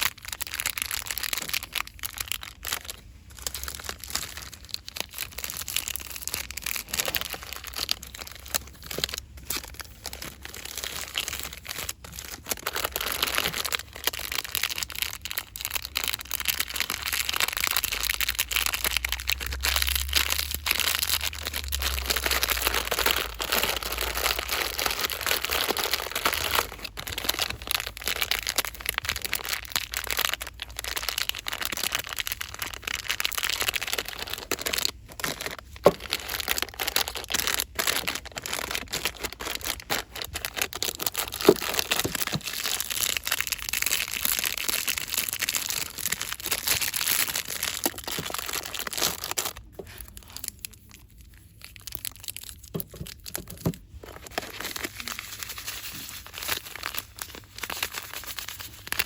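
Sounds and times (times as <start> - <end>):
packaging rustling and crinkling: 0.0 - 59.0.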